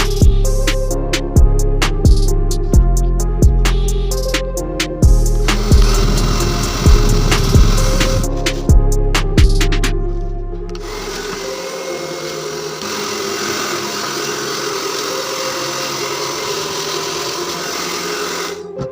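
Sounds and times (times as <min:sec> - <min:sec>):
background music: 0:00.0 - 0:18.9
hair dryer running: 0:05.4 - 0:08.7, 0:10.7 - 0:18.9.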